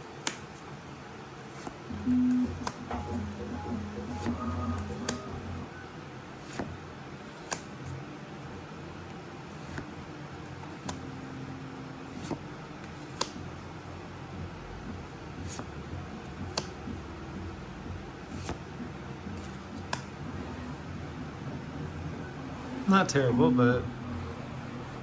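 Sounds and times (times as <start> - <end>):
low steady hum: 0.0 - 25.0
cards being handled: 1.5 - 1.8, 6.4 - 6.7, 9.6 - 11.1, 12.1 - 13.5, 18.3 - 18.6
card sliding click: 4.1 - 5.3.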